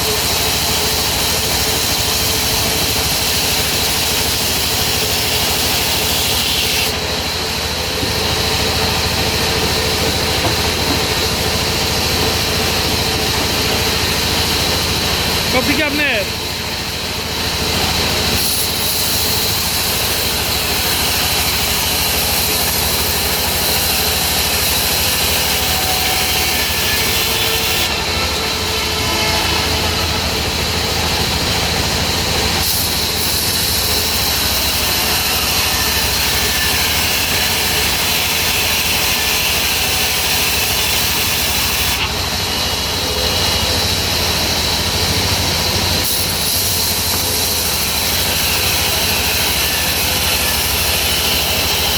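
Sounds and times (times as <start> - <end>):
sawmill saw droning: 0.0 - 51.9.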